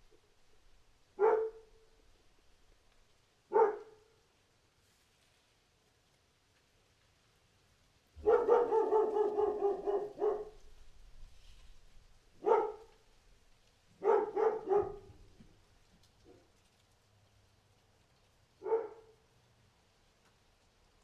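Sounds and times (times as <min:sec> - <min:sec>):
dog barking: 0:01.2 - 0:01.9, 0:03.5 - 0:04.2, 0:08.2 - 0:10.7, 0:12.4 - 0:13.0, 0:14.0 - 0:15.4, 0:18.6 - 0:19.2.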